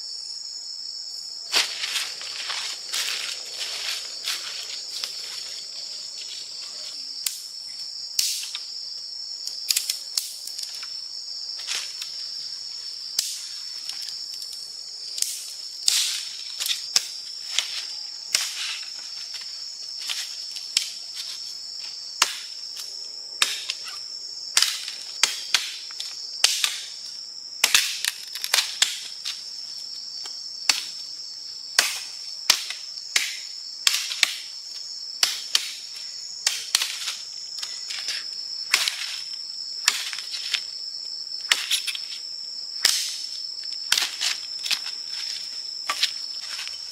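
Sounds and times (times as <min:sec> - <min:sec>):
forest insects droning: 0:00.0 - 0:46.9
sharp snaps and clicks: 0:07.2 - 0:07.5, 0:08.2 - 0:08.7, 0:09.4 - 0:10.9, 0:15.2 - 0:17.1, 0:42.8 - 0:43.2.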